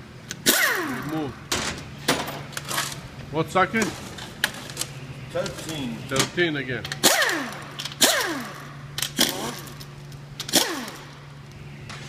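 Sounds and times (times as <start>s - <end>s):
pneumatic wrench whining: 0.3s - 1.2s, 6.9s - 11.2s
sharp metal clicks: 5.4s - 11.1s.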